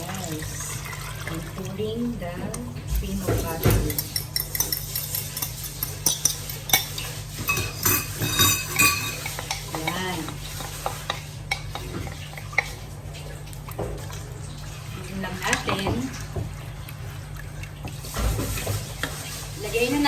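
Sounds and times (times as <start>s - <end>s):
utensil scraping a pan: 3.0s - 12.9s.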